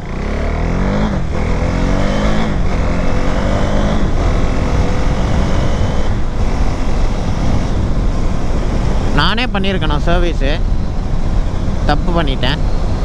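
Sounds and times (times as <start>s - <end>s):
motorcycle engine shifting gears: 0.0s - 10.0s
low wind rumble: 0.0s - 13.0s.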